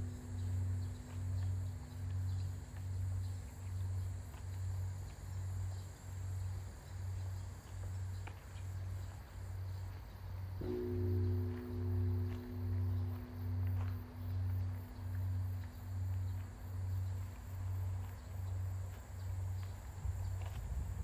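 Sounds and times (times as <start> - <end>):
large bronze bell ringing: 0.0 - 4.0, 10.6 - 18.6.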